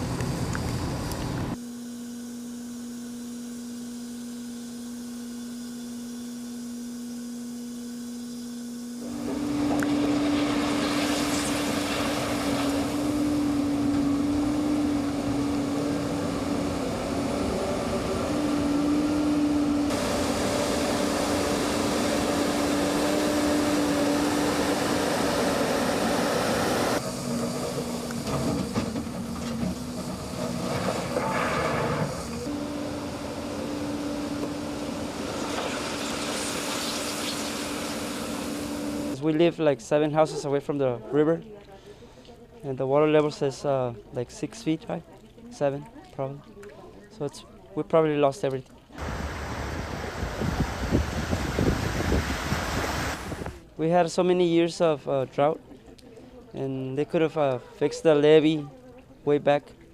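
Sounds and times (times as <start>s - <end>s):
heavy machinery engine hum: 0.0s - 1.6s, 9.0s - 39.2s, 49.0s - 53.6s.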